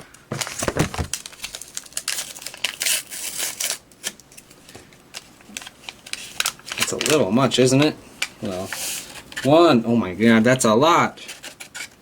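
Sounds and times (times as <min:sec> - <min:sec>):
paper packet crinkling and tearing: 0:00.4 - 0:09.5.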